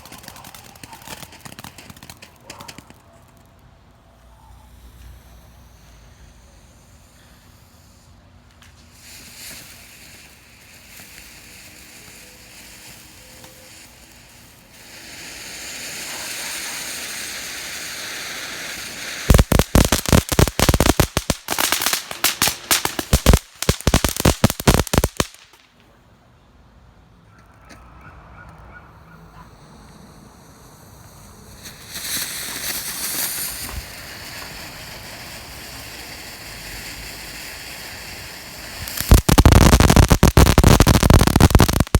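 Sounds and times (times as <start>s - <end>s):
rapid crackling pops: 0.0s - 7.2s, 19.1s - 25.7s, 38.6s - 41.9s
firework fountain hissing: 0.0s - 25.6s, 29.6s - 41.9s.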